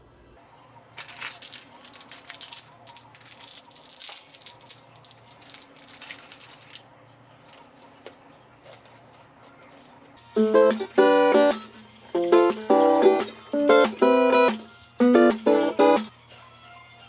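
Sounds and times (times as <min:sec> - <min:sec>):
plastic crinkling by hand: 0:01.0 - 0:10.2.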